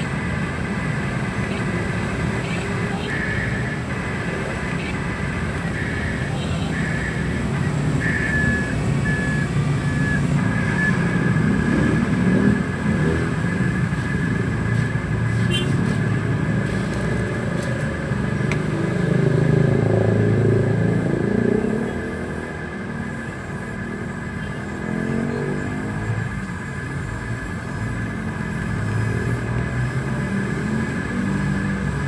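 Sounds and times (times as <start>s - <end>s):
toy vehicle motor whine: 4.6s - 14.9s, 21.0s - 32.0s.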